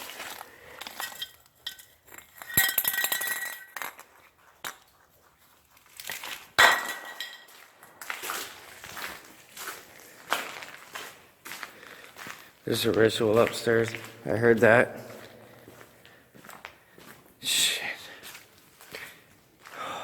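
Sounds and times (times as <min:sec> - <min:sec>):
hard object clinking: 0:00.9 - 0:04.0, 0:06.6 - 0:07.6.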